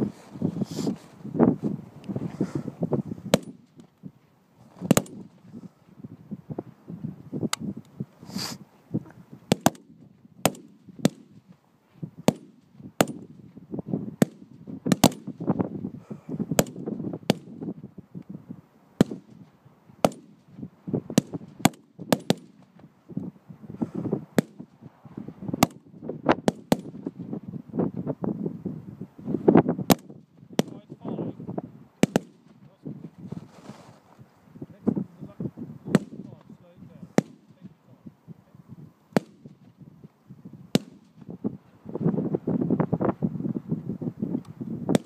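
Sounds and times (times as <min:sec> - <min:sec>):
rifle shots cracking: 0:09.5 - 0:11.3, 0:14.2 - 0:15.3, 0:32.0 - 0:32.5.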